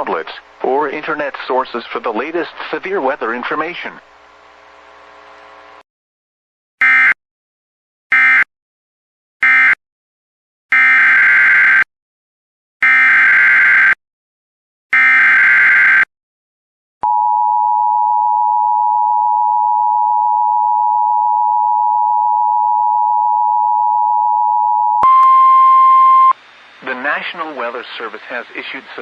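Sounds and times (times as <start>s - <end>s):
two-tone alert signal: 17.0s - 26.3s.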